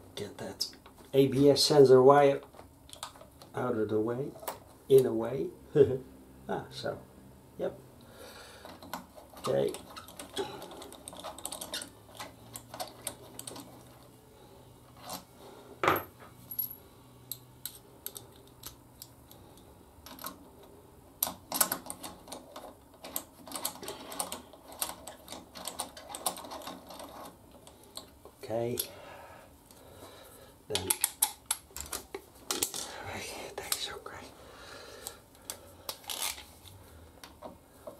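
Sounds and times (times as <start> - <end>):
metallic clicks of hand tools: 30.7 - 32.0.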